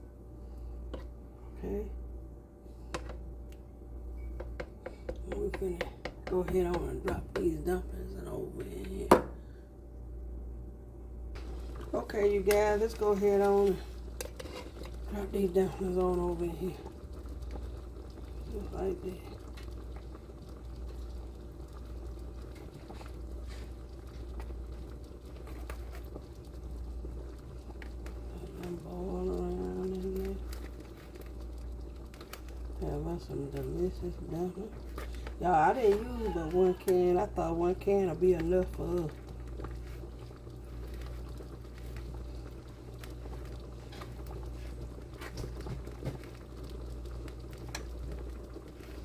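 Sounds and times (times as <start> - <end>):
pot of broth bubbling: 11.3 - 49.0.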